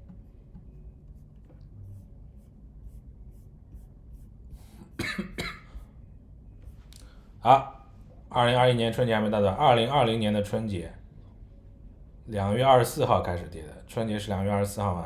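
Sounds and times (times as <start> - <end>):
man coughing: 4.8 - 5.8.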